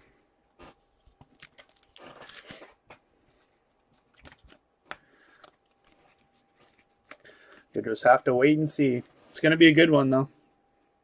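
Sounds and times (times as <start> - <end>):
packaging crinkling: 1.2 - 2.8, 3.8 - 4.6
cards tapping and clicking: 3.9 - 7.7.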